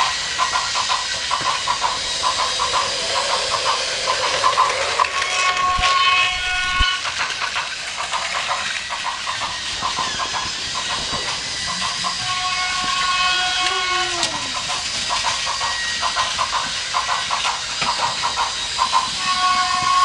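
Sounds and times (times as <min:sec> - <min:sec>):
toy train motor whirring: 0:00.0 - 0:20.0
steady electronic tone: 0:01.1 - 0:07.0.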